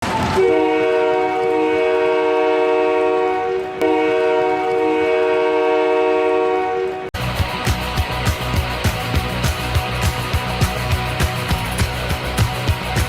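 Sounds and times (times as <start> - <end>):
hockey goal horn blasts: 0.4 - 7.1.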